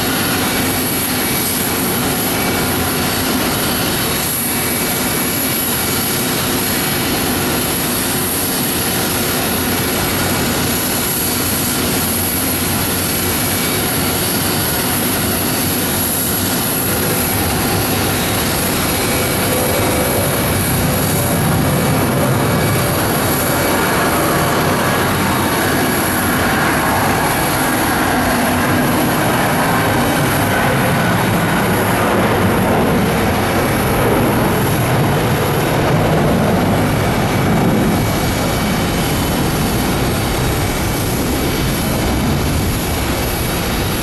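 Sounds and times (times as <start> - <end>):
jet engines at take-off power: 0.0 - 44.0.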